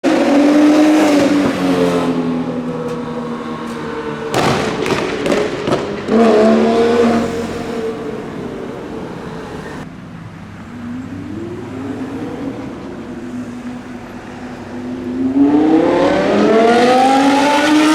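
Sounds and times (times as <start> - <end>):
sports car engine accelerating: 0.0 - 9.9, 10.6 - 17.9
sharp exhaust cracks: 3.6 - 8.5.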